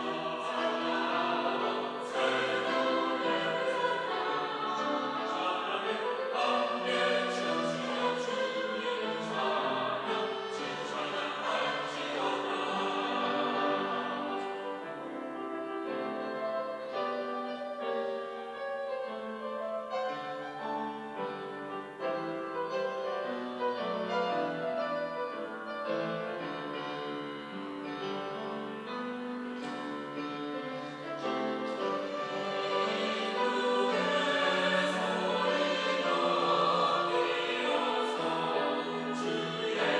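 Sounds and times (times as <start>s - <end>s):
choir singing in parts: 0.0s - 16.9s, 29.5s - 39.9s.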